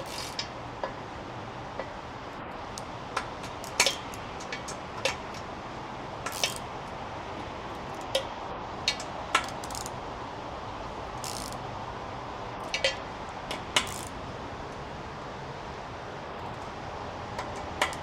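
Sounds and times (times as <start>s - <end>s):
steady background hiss: 0.0s - 18.0s.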